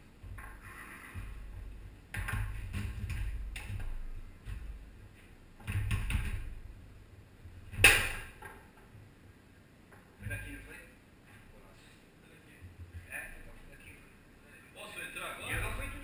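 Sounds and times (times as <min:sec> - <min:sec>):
foosball ball knocking: 0:07.7 - 0:08.7.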